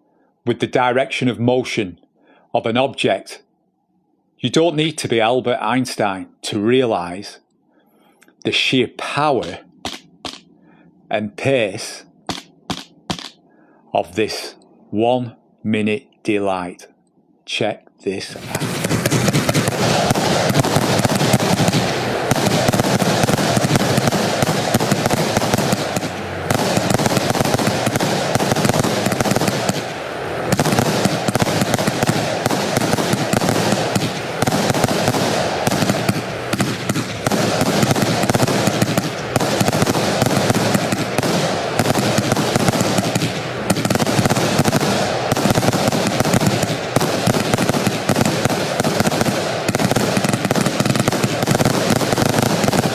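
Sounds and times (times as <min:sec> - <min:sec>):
firework shots firing: 0:09.3 - 0:10.6, 0:12.2 - 0:13.4, 0:18.3 - 0:52.9.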